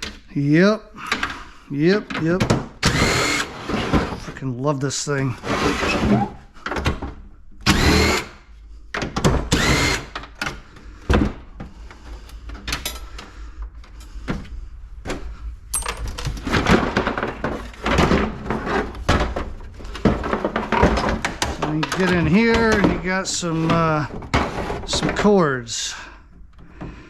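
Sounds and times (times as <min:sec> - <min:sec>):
power drill whining: 0:02.8 - 0:03.8, 0:07.6 - 0:08.4, 0:09.5 - 0:10.2
metal parts clattering: 0:15.7 - 0:18.9.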